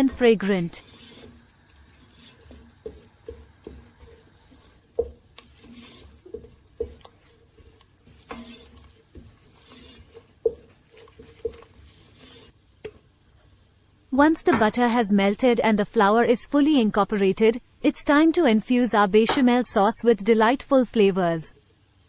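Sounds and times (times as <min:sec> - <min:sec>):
spoon scraping a pan: 0:00.0 - 0:12.6.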